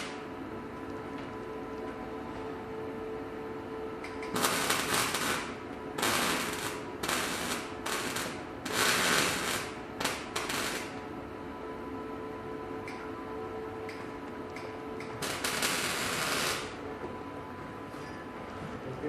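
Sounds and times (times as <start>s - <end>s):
steady hum: 0.0s - 19.0s
welding arc crackling: 4.2s - 11.0s, 15.1s - 16.8s.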